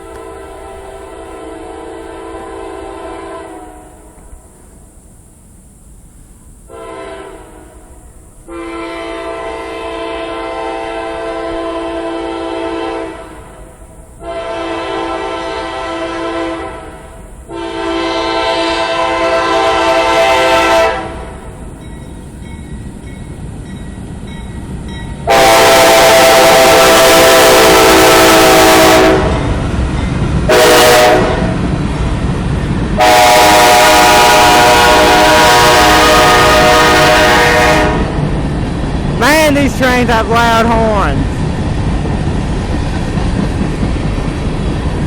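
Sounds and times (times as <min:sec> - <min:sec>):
locomotive air horn blasts: 0:00.0 - 0:04.1, 0:06.7 - 0:13.5, 0:14.2 - 0:21.4, 0:25.2 - 0:29.5, 0:30.5 - 0:31.6, 0:33.0 - 0:38.2
low train rumble: 0:00.0 - 0:45.0.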